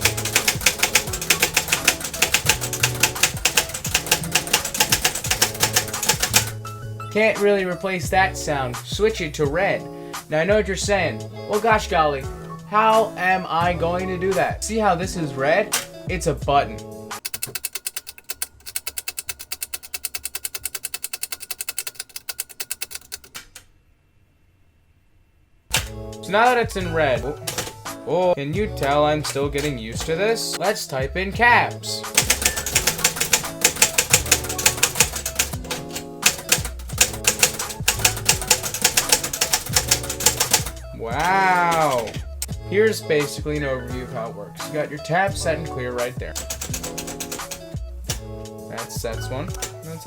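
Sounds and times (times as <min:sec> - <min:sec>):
typewriter keys clacking: 0:00.0 - 0:06.6, 0:17.2 - 0:23.6, 0:27.4 - 0:27.8, 0:28.8 - 0:30.6, 0:32.2 - 0:42.3, 0:46.4 - 0:48.2, 0:49.5 - 0:49.8
background music: 0:00.0 - 0:23.4, 0:25.7 - 0:50.0.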